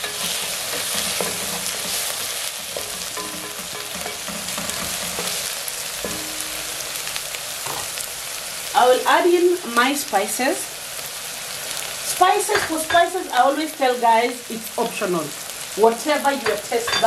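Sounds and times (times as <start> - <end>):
spoon scraping a pot: 0.0 - 5.6
onions sizzling in oil: 0.0 - 17.0.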